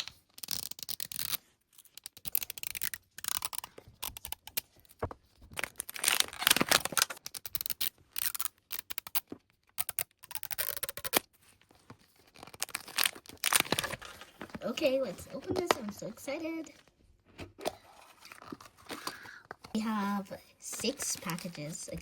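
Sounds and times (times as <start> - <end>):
plastic wrapper tearing and crinkling: 0.0 - 11.3, 12.1 - 14.6.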